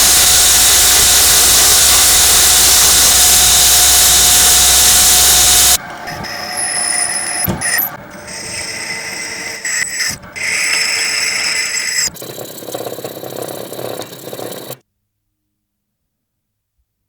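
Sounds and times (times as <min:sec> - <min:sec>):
tool scraping and rubbing blade: 0:03.3 - 0:14.8.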